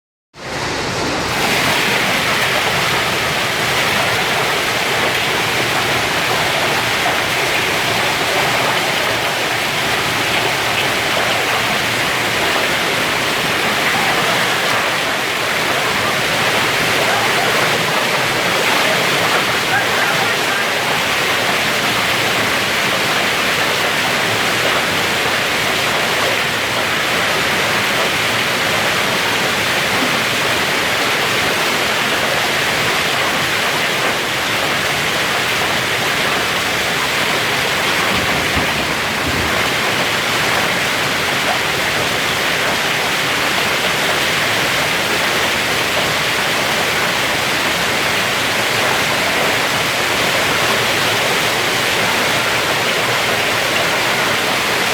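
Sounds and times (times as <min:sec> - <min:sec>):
hail hissing: 0:00.7 - 0:23.7, 0:37.3 - 0:42.1.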